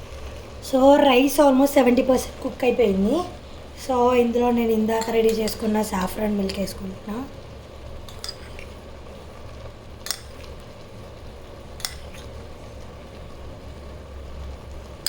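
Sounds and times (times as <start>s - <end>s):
low steady hum: 0.0s - 15.0s
metal utensil clinking on pot: 8.1s - 8.7s, 10.1s - 10.4s, 11.8s - 12.3s.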